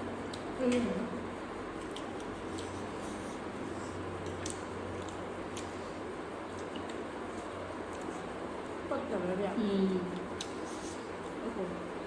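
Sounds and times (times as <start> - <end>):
steady background hum: 0.0 - 12.0
person chewing: 1.8 - 3.4, 4.0 - 5.8.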